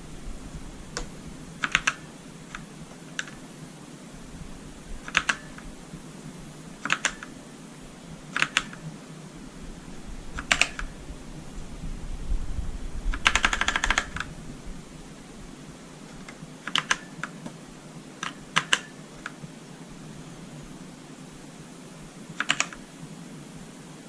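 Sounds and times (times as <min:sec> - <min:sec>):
mechanical keyboard keys clacking: 0:05.1 - 0:05.5, 0:06.8 - 0:07.3, 0:08.3 - 0:08.9, 0:10.3 - 0:11.0, 0:13.1 - 0:14.4, 0:16.0 - 0:21.0, 0:22.4 - 0:22.8.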